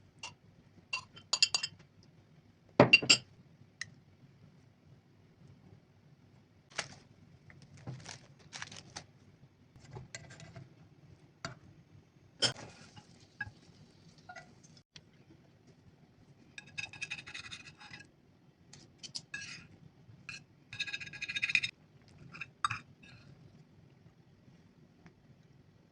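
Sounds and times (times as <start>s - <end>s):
utensils clinking on cookware: 1.0s - 1.8s.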